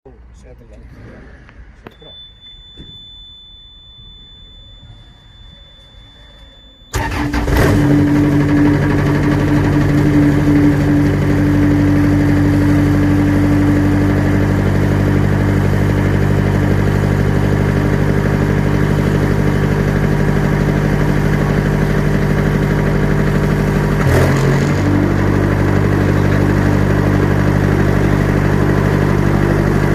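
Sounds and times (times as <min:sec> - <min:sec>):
faint high tone: 0:01.8 - 0:07.4
diesel engine running: 0:06.9 - 0:29.9.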